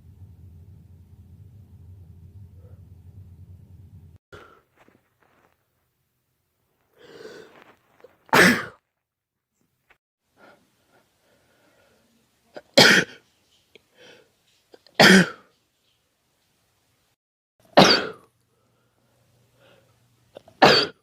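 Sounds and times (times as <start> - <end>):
breath in: 6.9 - 7.7
man sneezing: 8.3 - 8.8.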